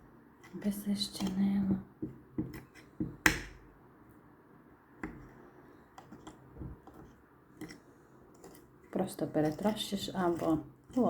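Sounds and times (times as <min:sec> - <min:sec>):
spoon knocking and scraping dish: 0:01.1 - 0:03.6.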